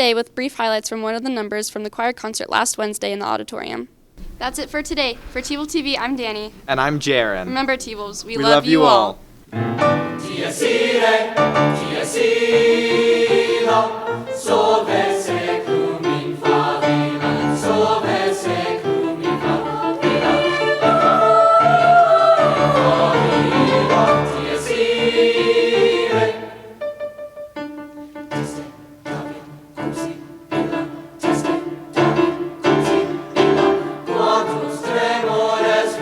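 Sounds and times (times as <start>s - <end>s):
choir singing: 7.6s - 27.2s, 28.3s - 36.0s.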